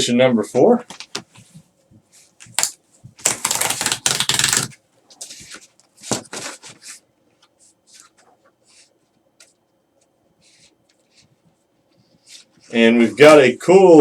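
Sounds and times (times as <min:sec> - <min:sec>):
packaging crinkling and rustling: 0:02.4 - 0:06.8.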